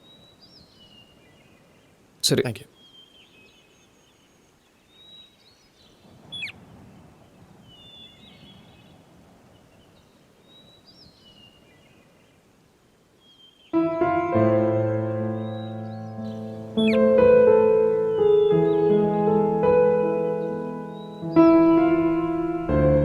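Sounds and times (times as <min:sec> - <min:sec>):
faint background hiss: 0:00.0 - 0:13.8
small birds chirping: 0:13.2 - 0:21.6
piano music: 0:13.8 - 0:23.0.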